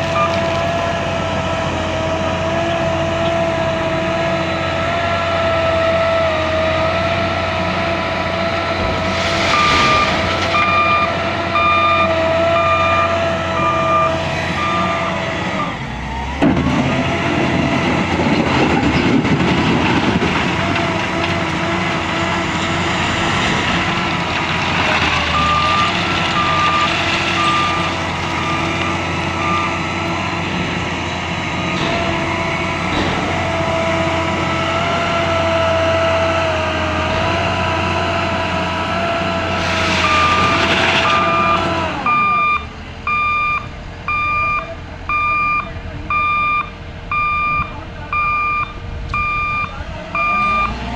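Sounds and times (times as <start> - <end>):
reversing alarm beeping: 0.0 - 1.0, 8.6 - 15.9, 25.1 - 29.9, 39.7 - 50.9
diesel engine running: 0.0 - 50.9
loud rush of noise: 8.0 - 12.0.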